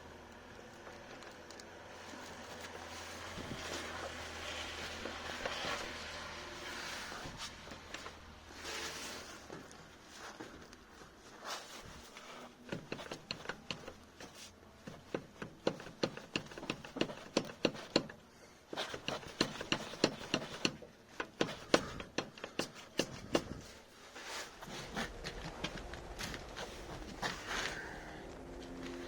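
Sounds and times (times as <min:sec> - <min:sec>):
sharp clicks and knocks: 0:12.7 - 0:18.2, 0:18.8 - 0:23.8.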